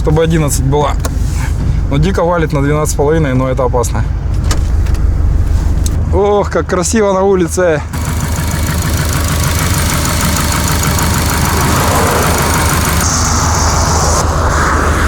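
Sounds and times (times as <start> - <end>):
car engine running: 7.9 - 14.2
engine knocking: 8.0 - 13.1
rushing noise: 10.6 - 15.0
high hiss: 11.4 - 15.0.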